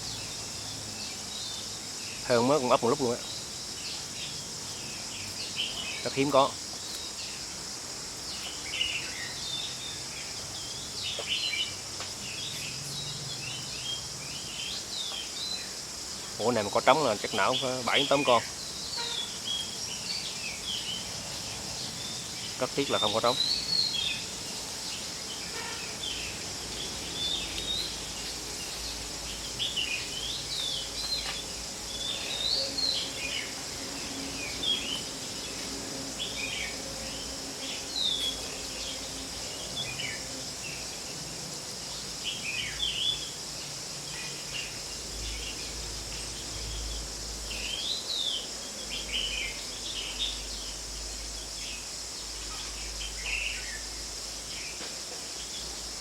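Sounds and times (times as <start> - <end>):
small birds chirping: 0.0 - 56.0
steady high hiss: 0.0 - 56.0.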